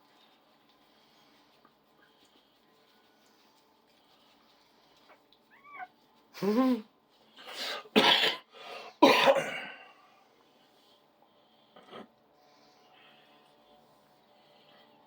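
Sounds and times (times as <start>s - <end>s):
dog hacking coughs: 8.0s - 9.7s.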